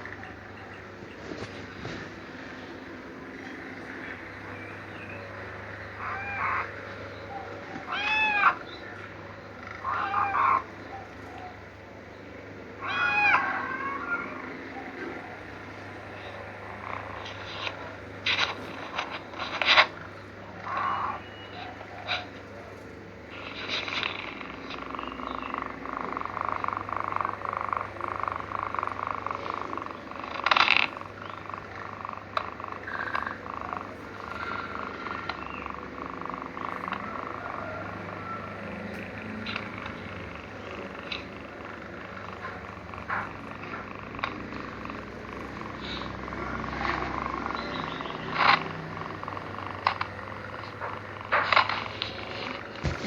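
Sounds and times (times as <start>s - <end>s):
cat meowing: 6.0s - 8.7s, 9.6s - 10.7s, 12.8s - 15.5s
cat snoring: 23.3s - 53.0s.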